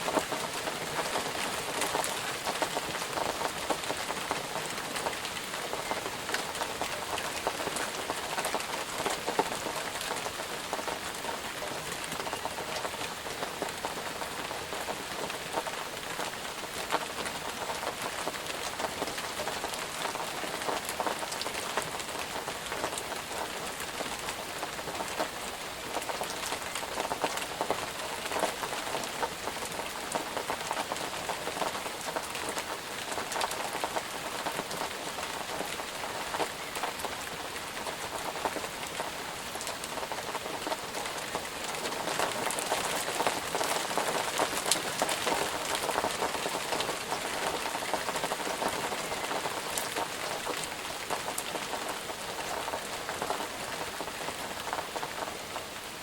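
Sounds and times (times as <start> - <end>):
steady rain falling: 0.0 - 56.0.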